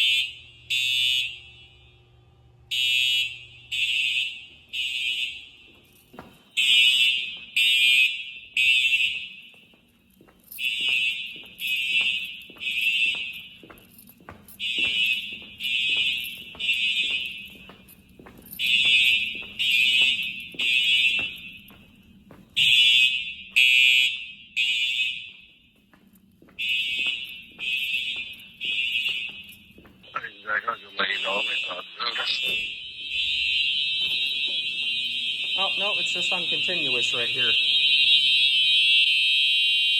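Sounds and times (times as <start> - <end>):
fire alarm horn blasts: 0.0 - 39.9.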